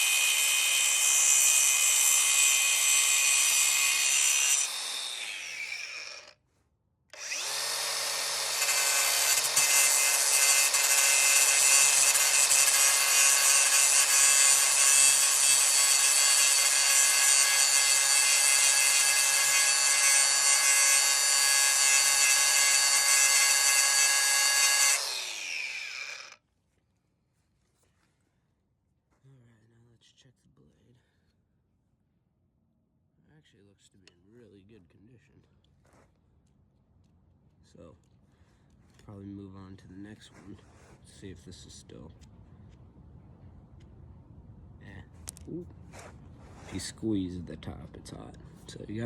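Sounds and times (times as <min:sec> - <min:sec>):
angle grinder cutting bolt: 0:00.0 - 0:06.4, 0:07.1 - 0:26.4.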